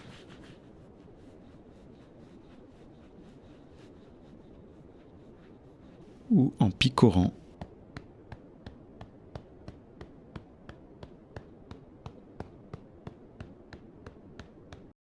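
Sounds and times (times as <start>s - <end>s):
fingertips tapping on skin: 7.5s - 14.9s.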